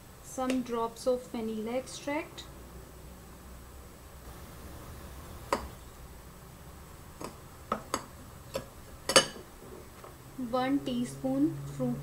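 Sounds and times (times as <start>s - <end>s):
utensils tapping a bowl: 5.5s - 5.8s, 7.2s - 9.5s.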